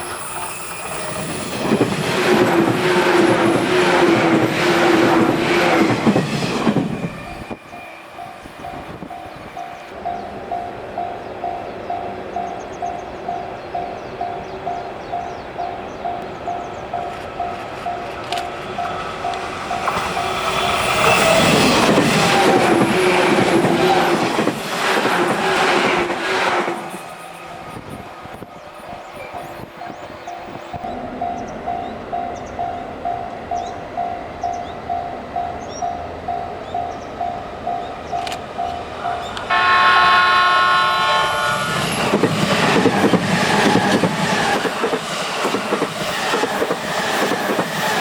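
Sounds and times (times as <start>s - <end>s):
level crossing warning bell: 0.0s - 24.7s, 27.4s - 45.2s
train wheels clattering: 0.9s - 10.2s, 16.2s - 28.6s, 41.4s - 48.0s.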